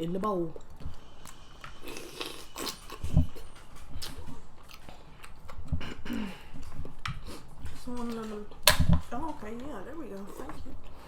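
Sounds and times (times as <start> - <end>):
chewing and mouth smacking: 0.6 - 8.4.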